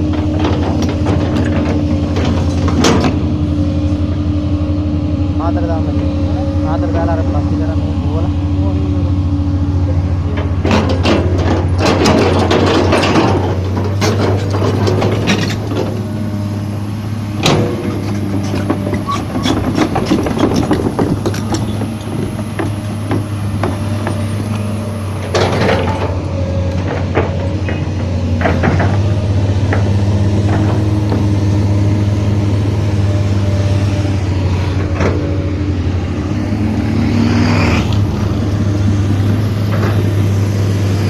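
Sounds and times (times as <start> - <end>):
steel tracks clanking and squealing: 0.0 - 3.4, 10.1 - 16.7, 17.4 - 33.8
diesel engine under load: 0.0 - 41.0.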